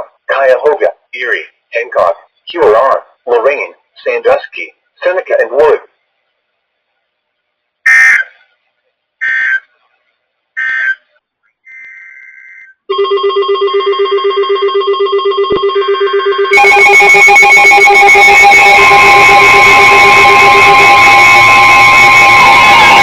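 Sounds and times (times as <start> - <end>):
pulsing alarm tone: 12.4 - 23.0
second louder alarm: 12.9 - 23.0.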